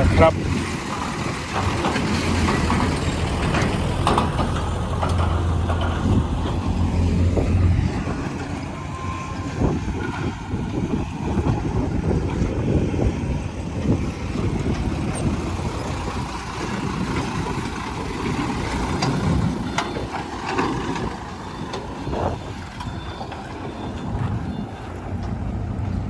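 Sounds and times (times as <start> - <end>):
truck engine rumbling: 0.0 - 26.0
sharp knocks and rattles: 0.6 - 7.6.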